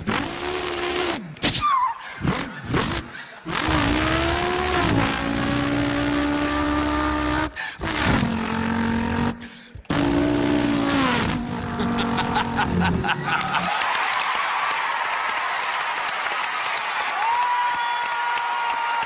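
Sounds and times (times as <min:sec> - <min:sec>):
man imitating car engine: 0:00.0 - 0:13.7.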